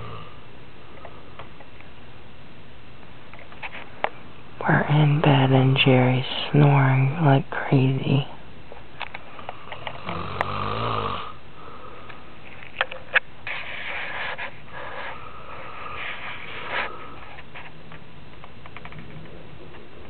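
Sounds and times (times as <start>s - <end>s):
man snoring: 0.0s - 0.4s, 9.5s - 12.0s
wheezing breaths: 14.6s - 17.4s.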